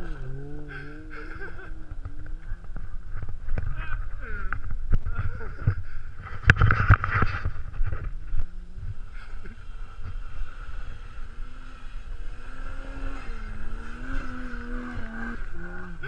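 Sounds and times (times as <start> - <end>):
car engine revving: 0.0 - 4.6, 8.5 - 16.0
wind rumble on microphone: 0.0 - 16.0.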